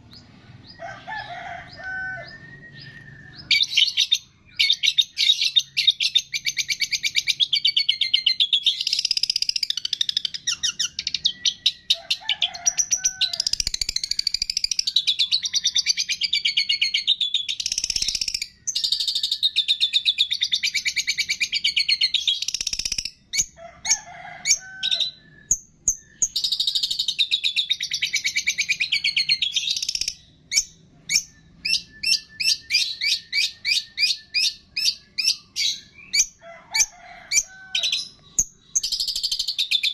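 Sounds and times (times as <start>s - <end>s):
songbird chirps and trills: 0.0s - 23.6s, 24.5s - 39.9s.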